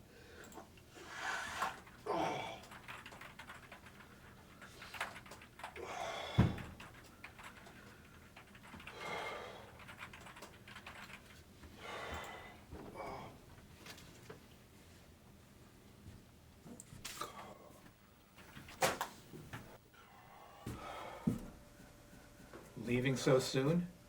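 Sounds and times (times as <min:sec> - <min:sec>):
typing on computer keyboard: 0:01.6 - 0:11.4
heavy breaths: 0:03.9 - 0:10.4, 0:11.6 - 0:13.5, 0:20.0 - 0:21.6.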